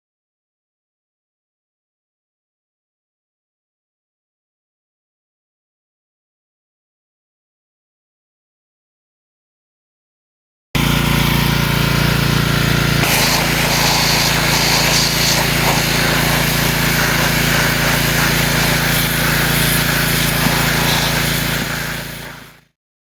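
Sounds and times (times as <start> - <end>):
chainsaw engine running: 10.8 - 22.7.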